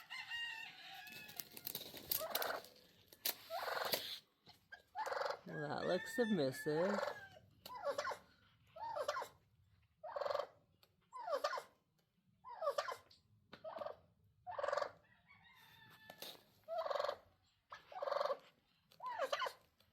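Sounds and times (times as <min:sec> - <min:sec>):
turkeys calling: 0:03.4 - 0:09.3, 0:10.0 - 0:10.6, 0:12.6 - 0:15.0, 0:16.7 - 0:19.6.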